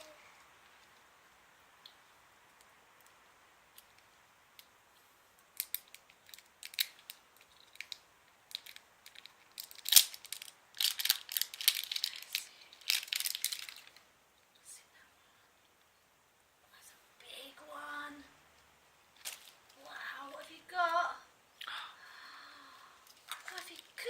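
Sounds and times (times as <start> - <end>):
wrapper crackling: 5.6 - 14.0, 19.2 - 19.9, 23.1 - 24.0.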